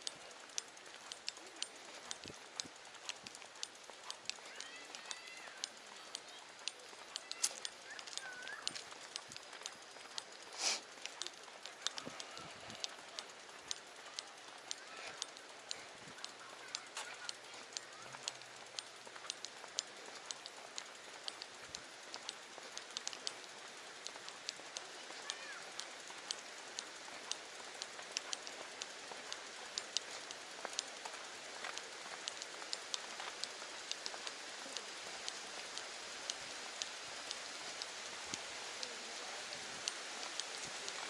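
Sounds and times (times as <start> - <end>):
steady rain hiss: 0.0 - 41.0.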